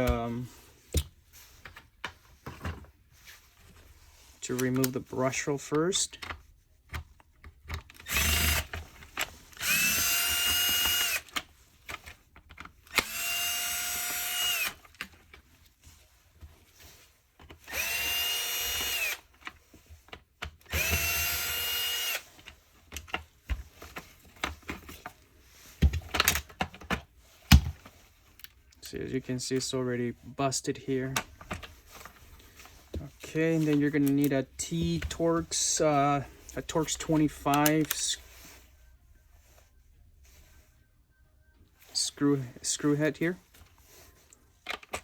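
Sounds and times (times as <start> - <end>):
cordless screwdriver whining: 7.9 - 8.9, 9.5 - 11.4, 12.9 - 14.9, 17.6 - 19.3, 20.6 - 22.4.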